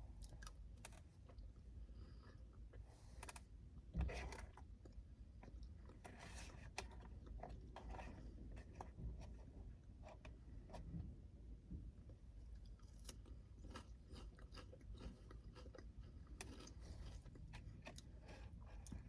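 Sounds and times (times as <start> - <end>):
person chewing: 12.6 - 19.0.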